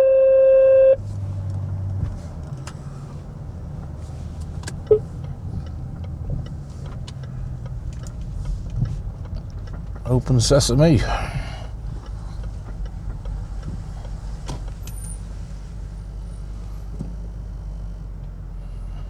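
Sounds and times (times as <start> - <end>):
phone tone: 0.0 - 1.0
diesel engine running from inside cabin: 0.0 - 19.0.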